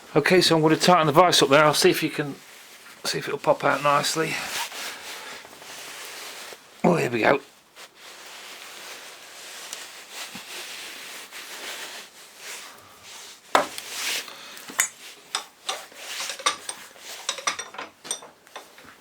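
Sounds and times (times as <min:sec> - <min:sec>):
metallic clicks and clinks: 0:14.8 - 0:18.8
vise scraping and creaking: 0:15.4 - 0:18.8.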